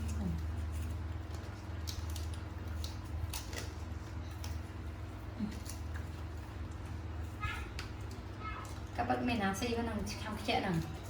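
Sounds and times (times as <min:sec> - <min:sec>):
dogs crunching fruit: 0:00.0 - 0:11.0.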